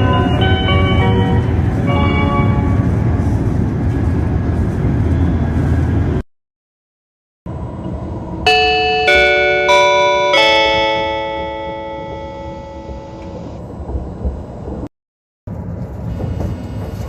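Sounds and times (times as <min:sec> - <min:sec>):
bell-like train chime: 0:00.0 - 0:02.9, 0:08.4 - 0:13.6
train interior rumble: 0:00.0 - 0:06.2, 0:07.5 - 0:14.9, 0:15.5 - 0:17.0.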